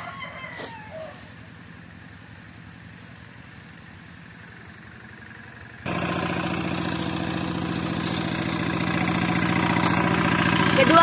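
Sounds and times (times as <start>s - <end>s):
diesel tractor engine running: 0.0s - 11.0s.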